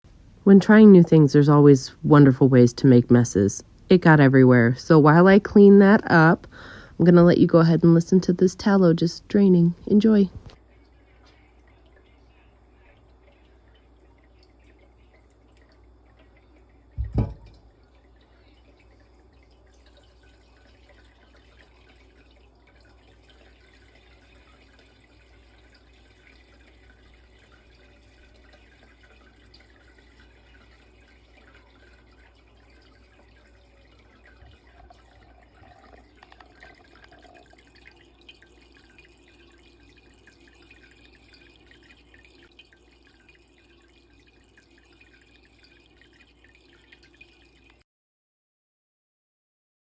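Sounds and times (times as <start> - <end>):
liquid dripping and trickling: 0.1 - 47.8
loud thump: 17.0 - 17.6.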